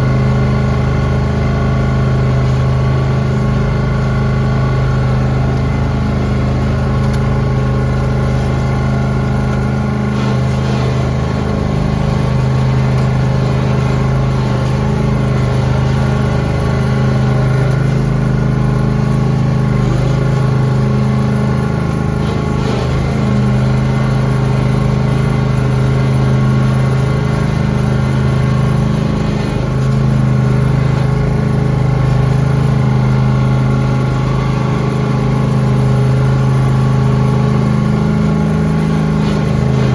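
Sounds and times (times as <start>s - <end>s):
lawn tractor engine running: 0.0s - 39.9s.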